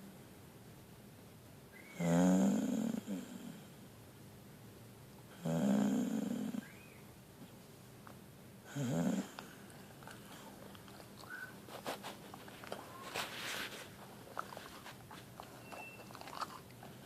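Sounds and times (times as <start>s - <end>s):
pet snoring: 2.0s - 3.7s, 5.4s - 6.6s, 8.7s - 9.6s.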